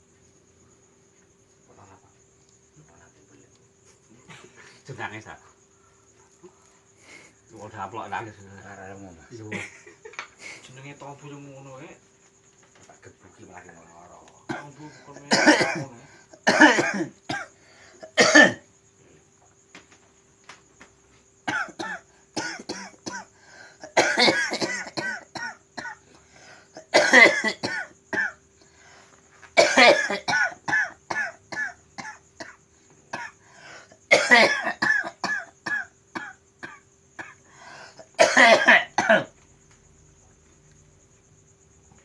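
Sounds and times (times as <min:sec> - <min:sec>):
person coughing: 0:14.5 - 0:18.6, 0:21.5 - 0:26.0, 0:26.8 - 0:28.4, 0:29.6 - 0:33.4, 0:34.1 - 0:37.4, 0:38.0 - 0:39.3.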